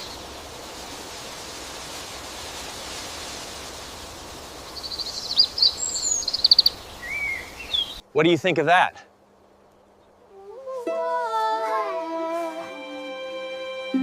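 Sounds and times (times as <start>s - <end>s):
small birds chirping: 0.0s - 1.3s, 2.0s - 10.6s
steady outdoor hiss: 0.0s - 14.0s.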